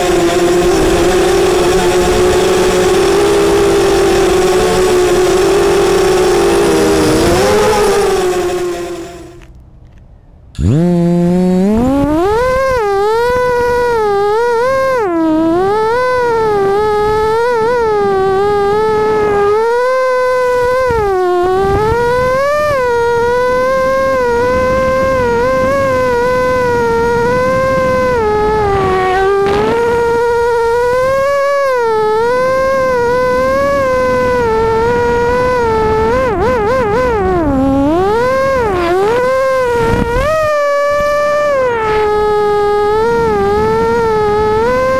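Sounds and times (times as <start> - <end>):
drone motors whining: 0.0 - 9.7, 10.5 - 44.9.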